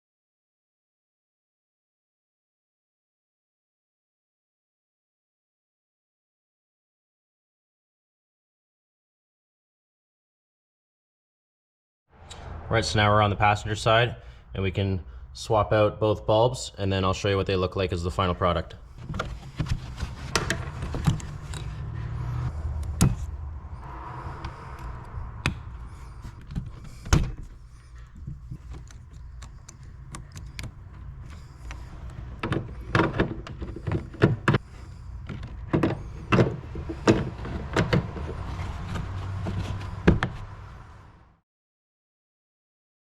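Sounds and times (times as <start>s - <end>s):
steady low hum: 17.9s - 41.0s
plastic parts clicking: 26.3s - 38.0s.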